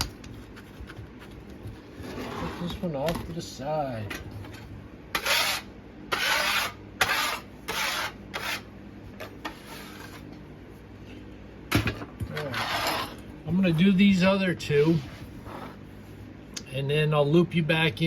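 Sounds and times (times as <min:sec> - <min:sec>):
casting mold scraping and rubbing: 0:00.0 - 0:03.0, 0:05.2 - 0:10.3, 0:12.2 - 0:13.3
low steady hum: 0:00.0 - 0:18.0.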